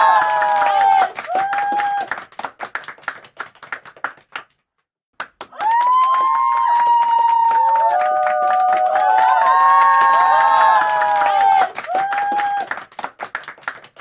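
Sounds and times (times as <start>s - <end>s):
crowd cheering and screaming: 0.0s - 2.1s, 5.5s - 12.7s
crowd cheering and yelling: 0.0s - 2.1s, 5.5s - 12.8s
hand claps: 0.0s - 14.0s.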